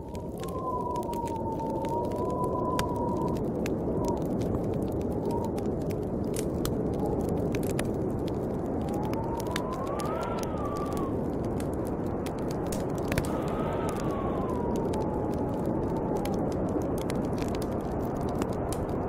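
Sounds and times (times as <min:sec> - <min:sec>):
howling snowstorm wind: 0:00.0 - 0:19.0
wood fire crackling: 0:00.0 - 0:19.0.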